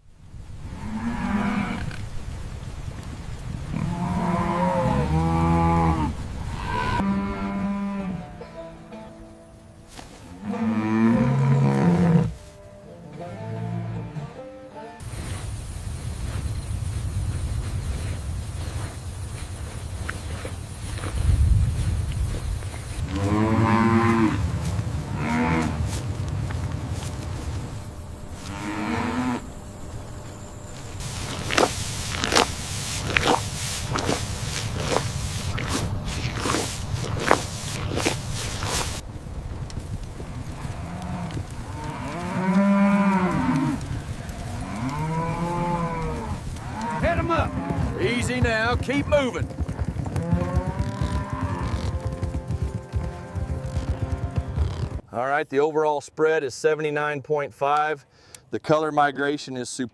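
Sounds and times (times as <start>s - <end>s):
cattle mooing: 3.8s - 8.4s, 10.2s - 14.5s, 23.0s - 26.0s, 28.0s - 39.0s, 40.5s - 48.3s, 50.2s - 54.6s.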